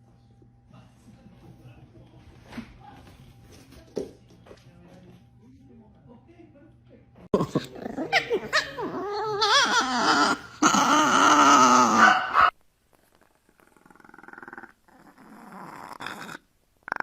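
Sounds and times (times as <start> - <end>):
dog vocalizing: 7.4 - 12.5.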